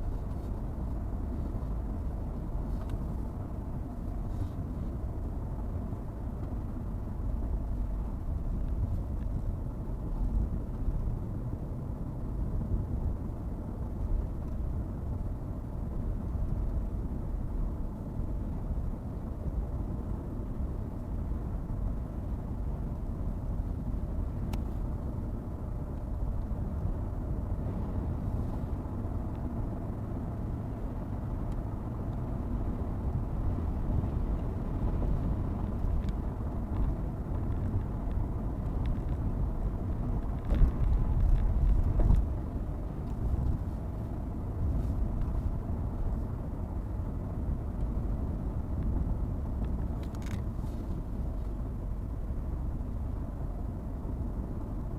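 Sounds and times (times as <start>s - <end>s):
car road and engine rumble: 0.0s - 54.9s.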